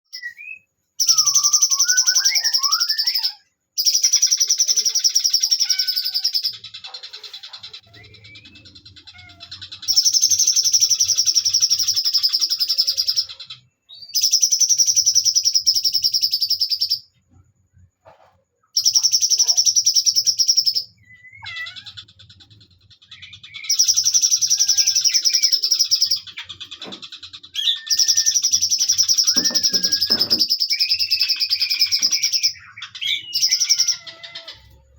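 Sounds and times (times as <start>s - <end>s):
songbird high-pitched trills: 0.1s - 6.8s, 18.7s - 34.9s
bird chirps: 0.1s - 34.9s.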